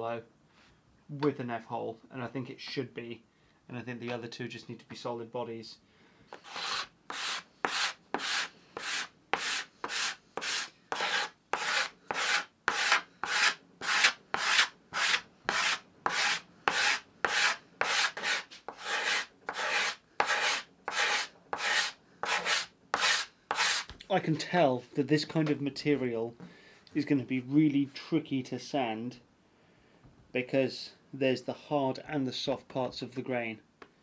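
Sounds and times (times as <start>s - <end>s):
card scraper scraping wood: 6.4s - 23.9s.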